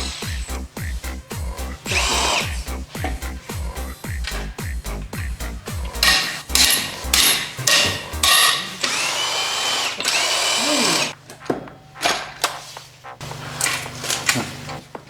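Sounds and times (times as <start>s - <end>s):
background music with low beat: 0.0s - 8.4s
power tool whining: 1.4s - 3.2s, 6.0s - 11.2s.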